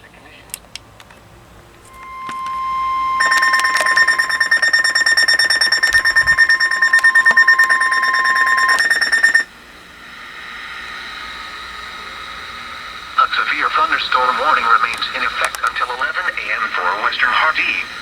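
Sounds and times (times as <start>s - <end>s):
steady warning alarm tone: 1.8s - 18.0s
rapidly pulsing alarm beeps: 1.9s - 9.6s.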